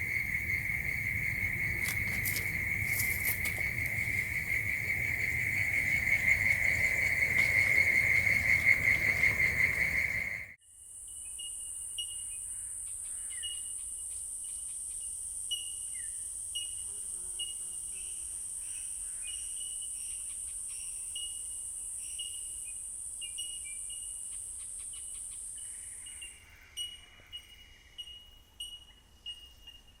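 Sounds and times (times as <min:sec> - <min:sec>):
insect high-pitched trill: 0:00.0 - 0:12.4
insect chirps: 0:00.0 - 0:30.0.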